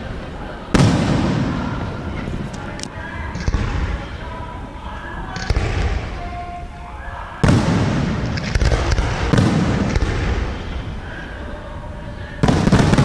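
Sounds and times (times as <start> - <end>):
firework shells bursting: 7.4 - 11.1, 12.4 - 13.0.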